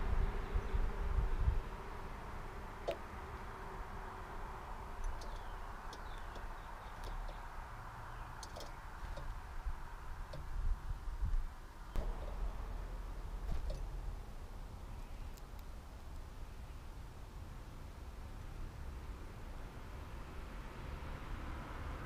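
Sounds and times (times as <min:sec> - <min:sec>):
birds clicking and tapping: 0:02.8 - 0:03.1, 0:04.8 - 0:10.6, 0:13.4 - 0:14.0
bird chirps: 0:05.0 - 0:09.3
low rumble: 0:10.5 - 0:15.1.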